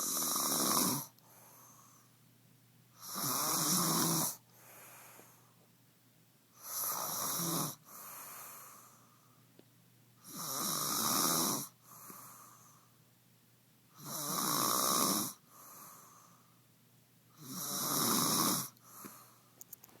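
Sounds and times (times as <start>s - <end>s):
person snoring: 0.0s - 1.8s, 3.0s - 4.4s, 6.6s - 8.8s, 10.2s - 11.8s, 14.0s - 16.2s, 17.4s - 19.2s
soft breath out: 4.5s - 5.7s, 18.8s - 19.6s.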